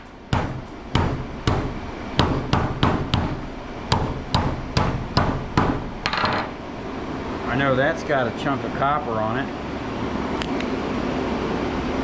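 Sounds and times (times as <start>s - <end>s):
hammer striking electronic equipment: 0.0s - 6.3s.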